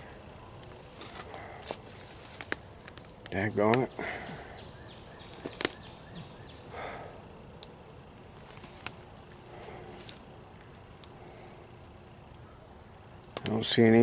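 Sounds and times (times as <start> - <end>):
insect trilling: 0.0 - 2.1, 3.3 - 8.3, 10.5 - 14.0
light clicks and rustles: 0.6 - 3.4, 8.4 - 9.0.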